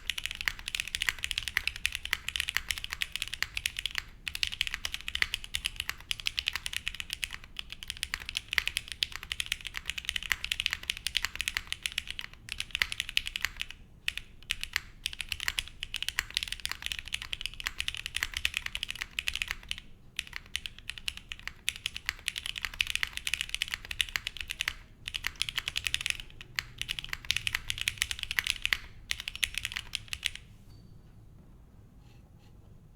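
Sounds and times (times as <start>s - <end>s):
mechanical keyboard typing: 0.0s - 30.4s.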